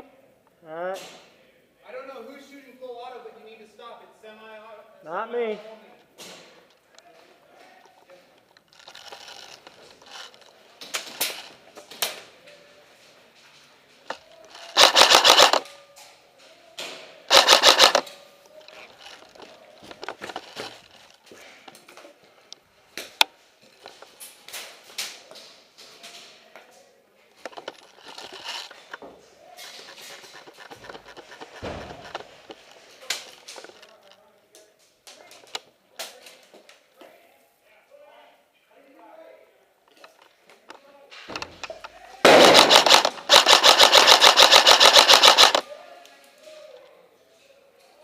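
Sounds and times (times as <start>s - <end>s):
rapid automatic fire bursts: 14.6s - 15.6s, 17.3s - 18.0s, 42.3s - 45.6s.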